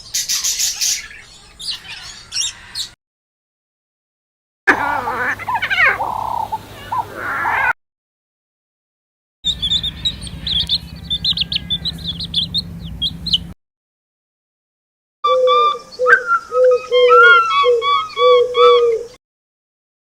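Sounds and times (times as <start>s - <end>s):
gliding animal call: 4.7s - 7.8s, 9.5s - 13.6s
steady low hum: 9.5s - 13.6s.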